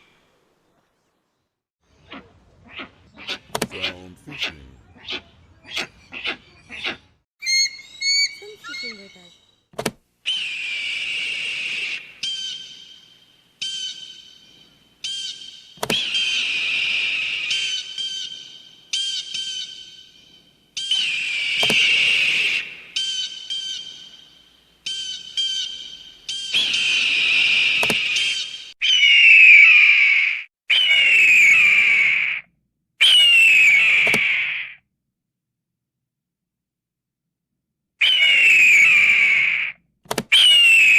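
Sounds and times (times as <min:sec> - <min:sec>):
eagle screaming: 0:02.1 - 0:09.2, 0:10.3 - 0:12.6, 0:16.0 - 0:19.4, 0:20.8 - 0:24.0, 0:24.9 - 0:34.8, 0:38.0 - 0:40.9.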